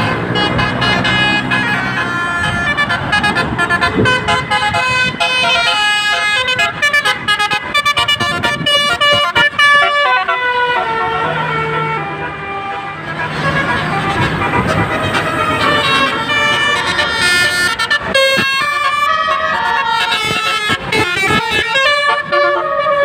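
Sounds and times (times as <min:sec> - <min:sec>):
multi-tone bus horns playing tune: 0:00.0 - 0:23.0
low engine hum: 0:10.5 - 0:19.4.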